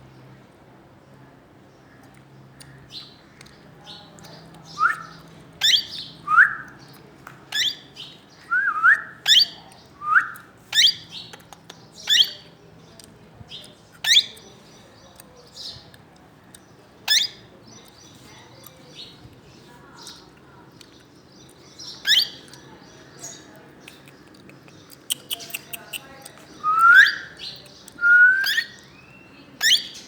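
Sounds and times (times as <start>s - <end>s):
parakeet calling: 5.6s - 6.0s, 7.5s - 7.8s, 12.1s - 12.4s, 17.1s - 17.4s, 22.0s - 22.4s, 29.6s - 30.0s.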